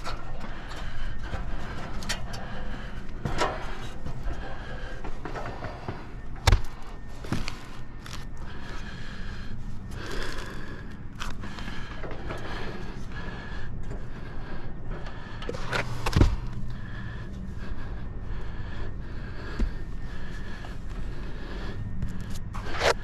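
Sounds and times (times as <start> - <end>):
low hum: 0.0 - 23.0.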